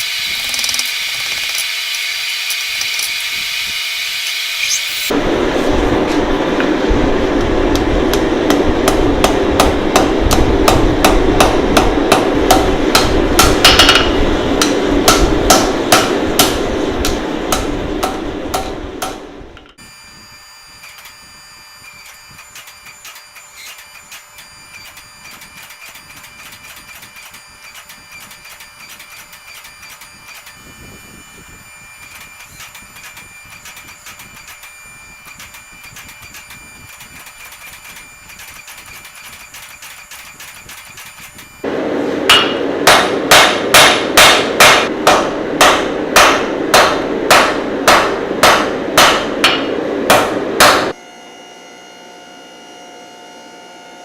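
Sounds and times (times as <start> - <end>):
steady rumbling noise: 5.1 - 19.7, 41.2 - 51.0
hammer blows on steel: 8.2 - 19.3.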